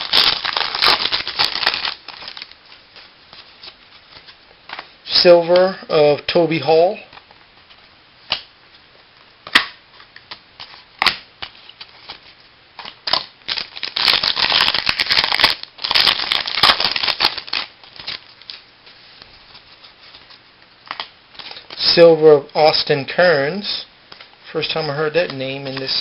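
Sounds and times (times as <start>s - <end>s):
cards rustling and crinkling: 0.0s - 4.9s, 9.5s - 21.9s, 24.1s - 26.0s.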